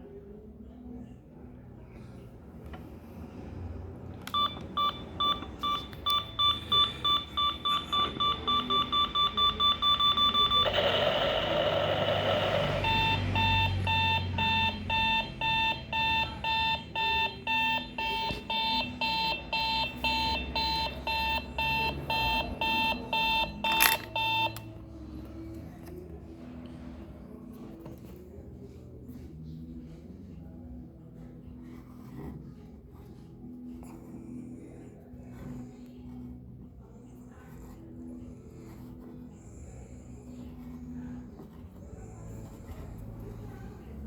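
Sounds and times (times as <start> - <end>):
alarm clock click: 4.3 - 24.7
electronic alarm clock beeps: 4.3 - 24.7.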